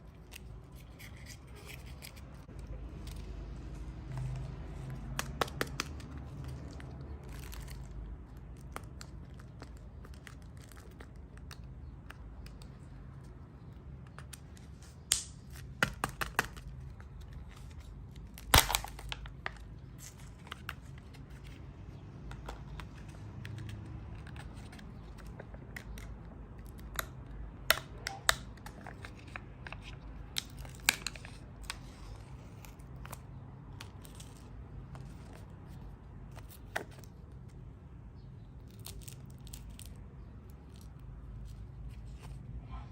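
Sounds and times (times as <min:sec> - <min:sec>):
wrapping crinkling and tearing: 0:04.2 - 0:11.7, 0:14.8 - 0:21.6.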